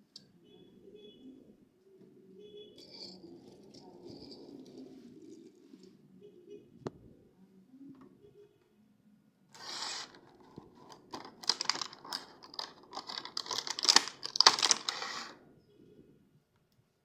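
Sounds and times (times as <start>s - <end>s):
packaging being torn open: 9.6s - 15.3s
scratchy crinkling and clicking: 9.6s - 15.4s.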